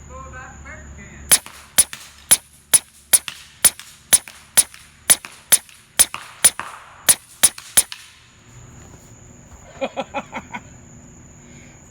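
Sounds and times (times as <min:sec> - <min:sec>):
air rifle shots: 0:01.3 - 0:08.4.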